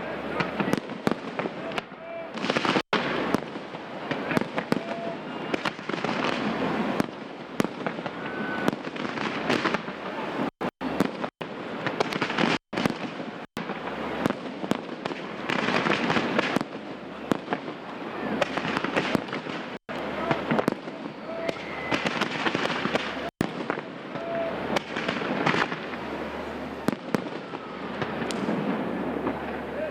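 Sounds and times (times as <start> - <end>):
fireworks crackling and bangs: 0.0 - 29.9
firework whistles: 2.4 - 11.3, 20.3 - 29.6.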